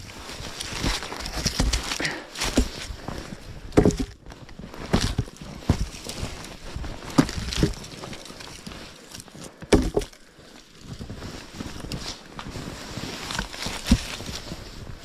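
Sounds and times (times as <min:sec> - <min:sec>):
thumps and knocks: 0:00.8 - 0:02.9, 0:03.6 - 0:06.0, 0:07.0 - 0:07.9, 0:09.6 - 0:10.2.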